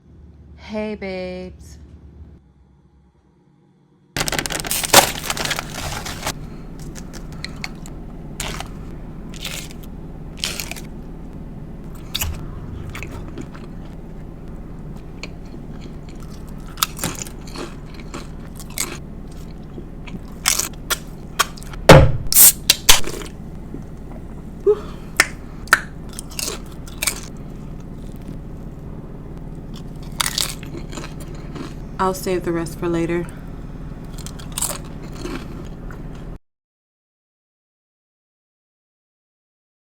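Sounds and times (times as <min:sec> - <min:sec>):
crunchy biting and chewing: 0:04.2 - 0:10.9, 0:11.9 - 0:14.0, 0:15.0 - 0:21.8, 0:22.4 - 0:24.1, 0:25.0 - 0:32.0, 0:34.0 - 0:36.3.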